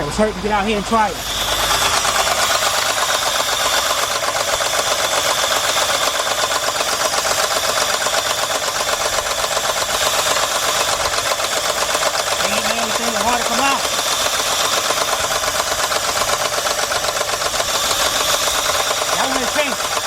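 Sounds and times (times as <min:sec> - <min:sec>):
engine idling rough with clatter: 0:00.0 - 0:20.0.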